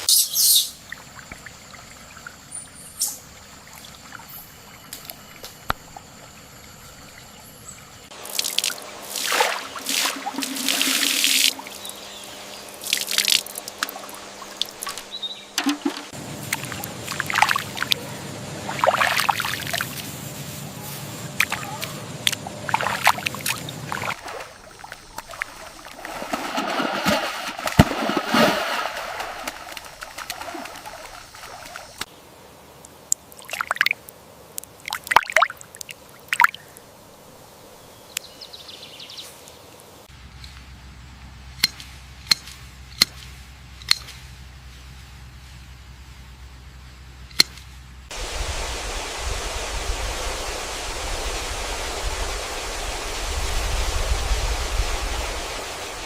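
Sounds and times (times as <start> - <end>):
water sloshing and pouring: 8.1 - 11.9, 12.8 - 18.0, 22.6 - 32.0
sharp clicks and knocks: 14.8 - 16.2.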